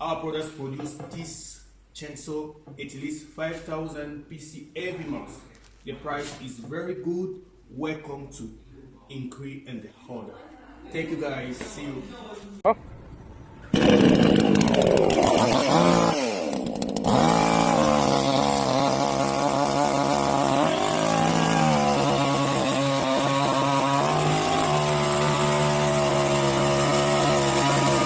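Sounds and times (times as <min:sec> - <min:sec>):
chainsaw engine running: 0:13.7 - 0:28.0.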